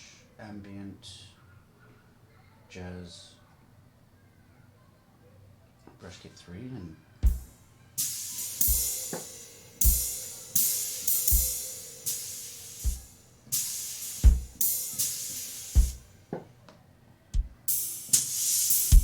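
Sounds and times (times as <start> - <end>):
bass drum hits: 7.2 - 7.5, 14.2 - 14.6
brush and cymbal swishes: 7.2 - 16.1, 17.7 - 19.0.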